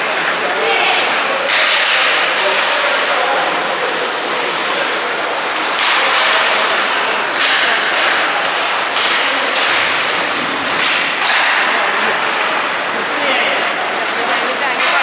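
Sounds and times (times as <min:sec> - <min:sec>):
arena crowd noise: 0:00.0 - 0:15.0.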